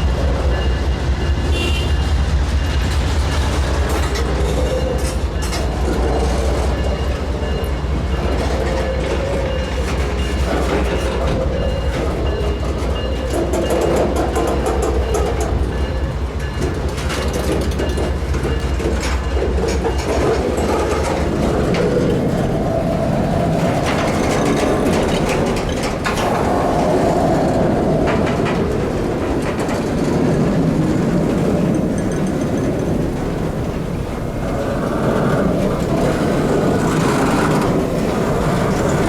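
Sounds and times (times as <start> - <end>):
train wheels clicking over rails: 0.0 - 39.0
deep low rumble: 21.0 - 39.0.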